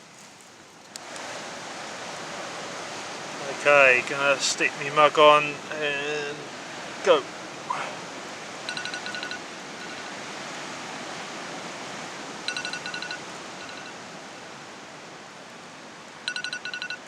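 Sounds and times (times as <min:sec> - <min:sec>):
rapid high chirps: 0:08.7 - 0:10.1, 0:12.5 - 0:13.9, 0:16.3 - 0:17.0.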